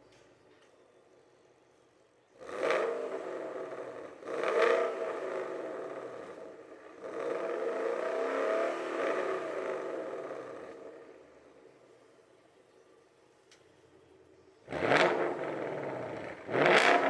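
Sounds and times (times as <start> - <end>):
car engine revving: 2.4 - 11.5, 14.7 - 17.0.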